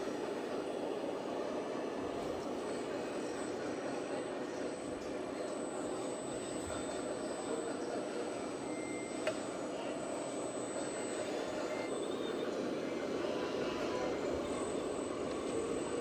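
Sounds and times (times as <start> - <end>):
mechanical hum of model: 0.0 - 16.0.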